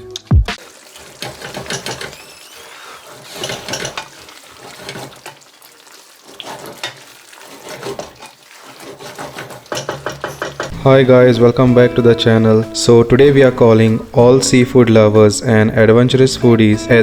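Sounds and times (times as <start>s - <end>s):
food sizzling in pan: 0.6s - 14.7s
utensil scraping pan: 0.6s - 15.1s.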